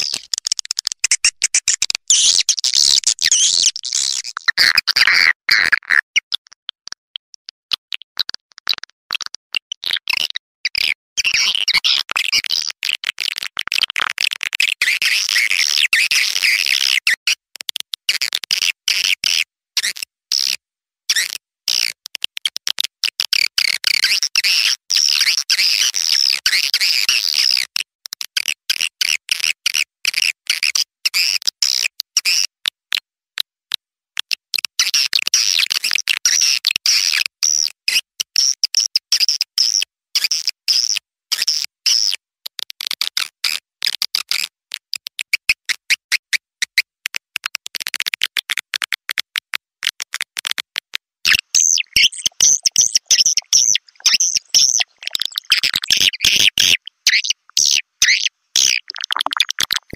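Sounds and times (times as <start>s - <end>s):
high-pitched bird twittering chirps: 1.0s - 4.4s, 51.3s - 59.9s.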